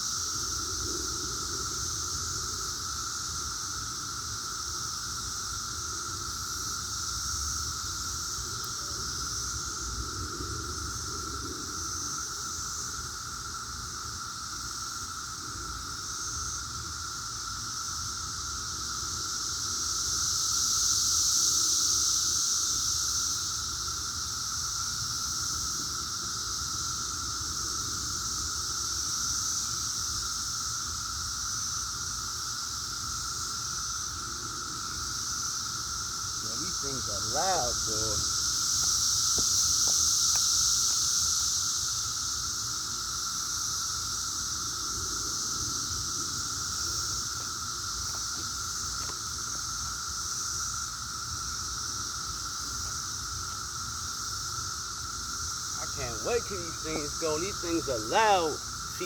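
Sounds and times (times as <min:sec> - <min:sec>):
cicadas droning buzz: 0:00.0 - 0:59.0.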